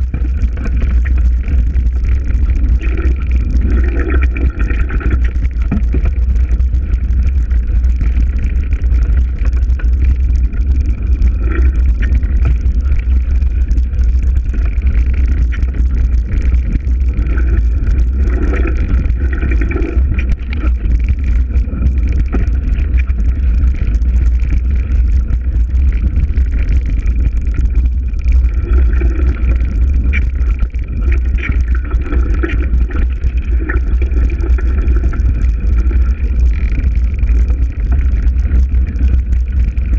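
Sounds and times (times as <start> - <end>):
wind rumble on microphone: 0.0 - 39.9.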